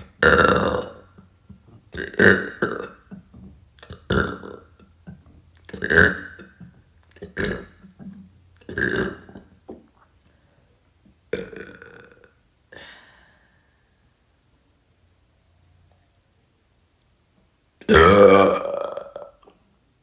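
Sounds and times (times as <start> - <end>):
woman burping: 0.2 - 1.1, 2.0 - 3.1, 5.7 - 6.5, 7.2 - 9.4, 11.3 - 13.0, 17.9 - 19.5.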